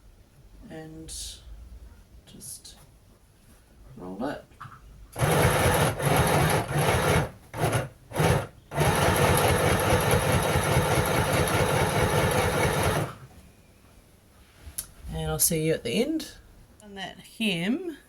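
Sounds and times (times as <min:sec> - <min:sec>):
electric sewing machine stitching: 0:05.2 - 0:13.2.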